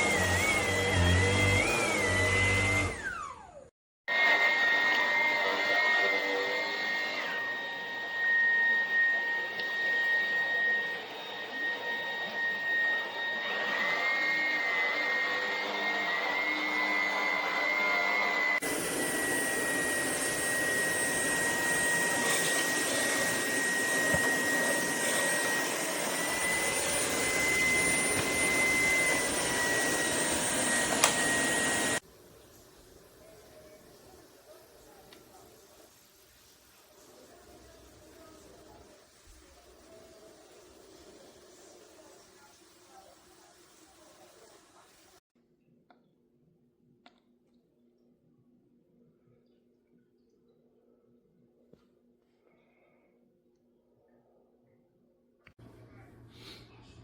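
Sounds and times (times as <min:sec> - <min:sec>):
vacuum motor whining: 0:00.0 - 0:32.0.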